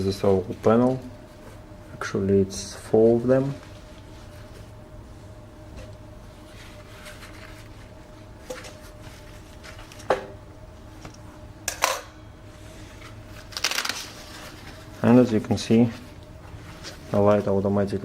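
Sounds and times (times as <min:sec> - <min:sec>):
faint steady hum: 0:00.0 - 0:18.0
fabric rustling: 0:06.2 - 0:10.0.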